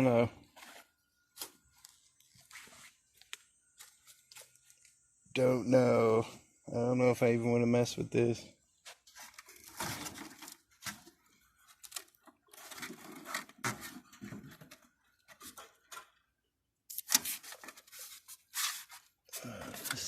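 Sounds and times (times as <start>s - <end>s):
plastic and metal parts scraping: 8.9s - 16.3s, 16.9s - 20.0s.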